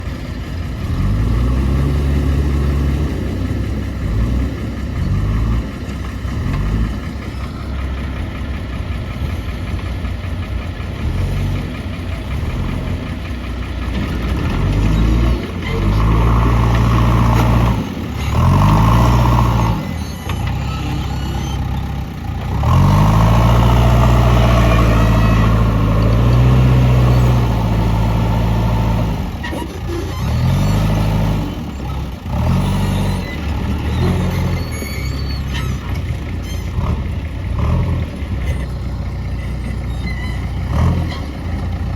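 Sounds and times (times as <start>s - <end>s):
backhoe diesel engine revving: 0.0s - 41.9s.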